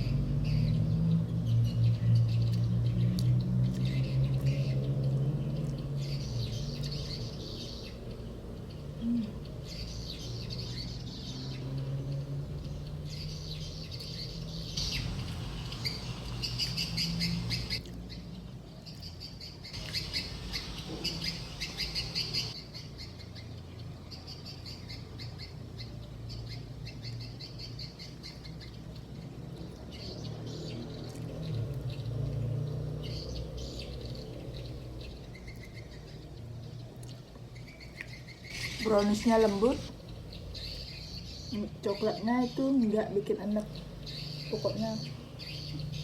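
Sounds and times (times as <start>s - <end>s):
chewing with mouth clicks: 37.0s - 37.3s.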